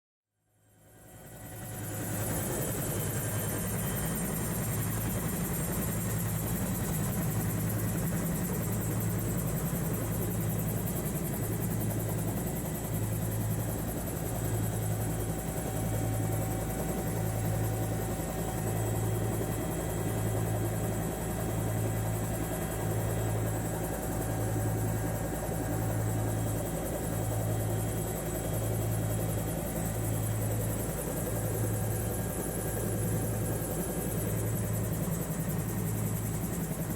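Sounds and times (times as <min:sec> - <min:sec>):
helicopter rotor throbbing drone: 0:00.4 - 0:36.9.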